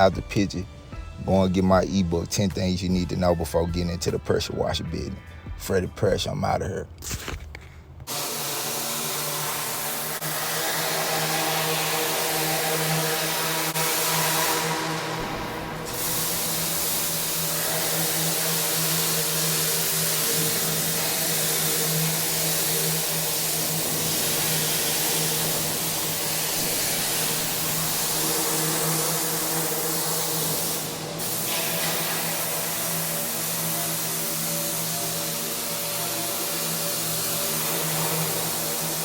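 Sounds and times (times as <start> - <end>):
high-pressure water spray hiss: 8.1 - 39.0
pressure washer engine hum: 8.1 - 39.0.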